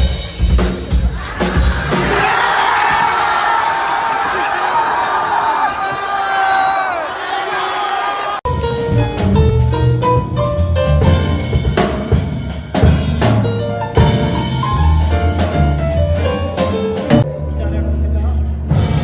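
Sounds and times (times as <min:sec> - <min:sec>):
drum kit beat: 0:00.0 - 0:02.6, 0:08.5 - 0:17.3
bass line: 0:08.5 - 0:19.0.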